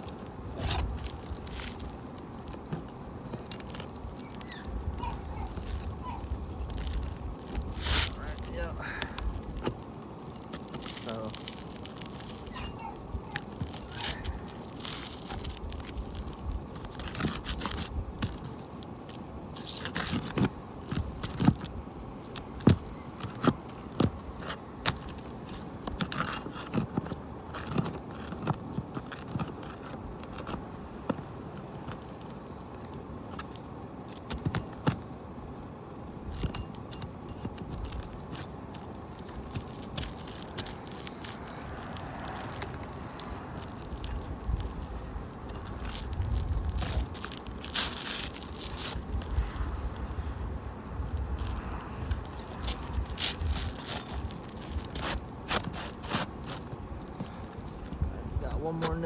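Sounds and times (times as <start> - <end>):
hand tool scraping under shingles: 0.0 - 8.5, 37.4 - 50.3, 51.3 - 58.1.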